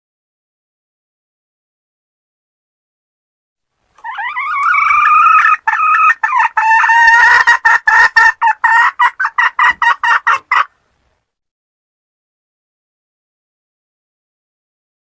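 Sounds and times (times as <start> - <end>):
hen calling and clucking: 3.9 - 11.0.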